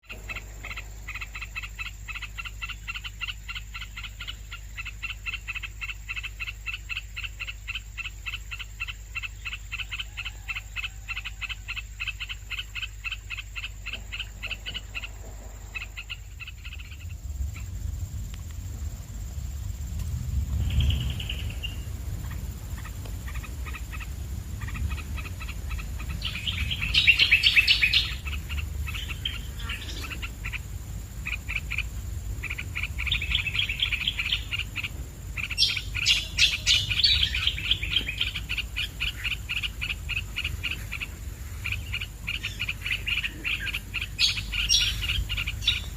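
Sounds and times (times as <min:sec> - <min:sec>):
high bird calls: 0:00.0 - 0:18.7, 0:20.3 - 0:45.9
nestlings begging chirps: 0:00.0 - 0:45.9
low rumble: 0:13.9 - 0:45.9.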